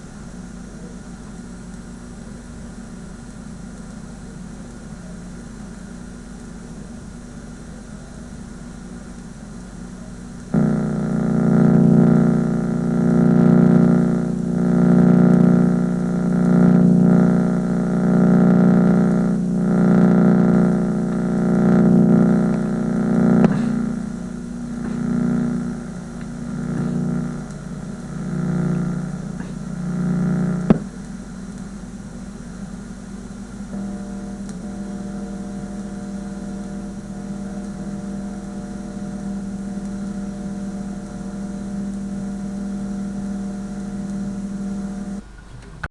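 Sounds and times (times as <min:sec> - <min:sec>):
buzz from tv speaker: 0:09.8 - 0:45.2.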